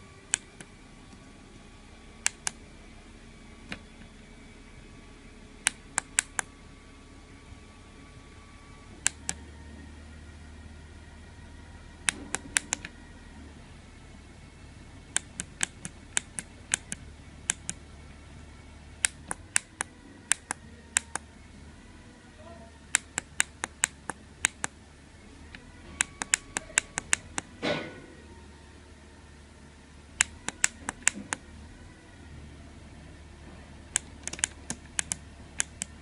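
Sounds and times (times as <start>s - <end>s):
keypad button clicks: 26.0s - 27.5s, 34.0s - 35.9s.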